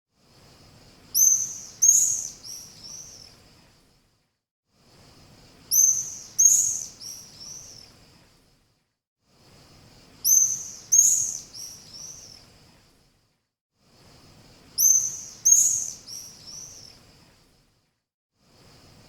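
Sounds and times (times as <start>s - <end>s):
swallow chirping: 1.2s - 3.3s, 5.7s - 7.8s, 10.3s - 12.4s, 14.8s - 16.9s.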